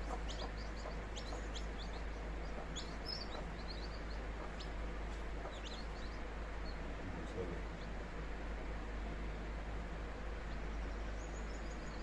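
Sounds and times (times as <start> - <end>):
chicks peeping: 0.0 - 8.7, 10.1 - 12.0
steady low hum: 0.0 - 12.0.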